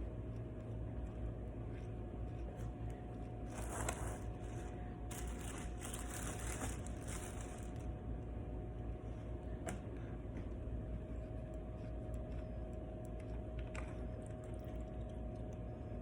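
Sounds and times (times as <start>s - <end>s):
steady low hum: 0.0s - 16.0s
rustling crinkling handling noise: 3.4s - 7.9s.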